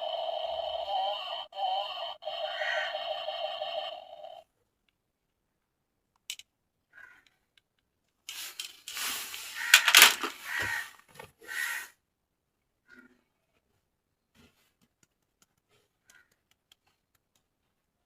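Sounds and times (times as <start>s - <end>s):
pitched electronic toy sound: 0.0s - 4.4s.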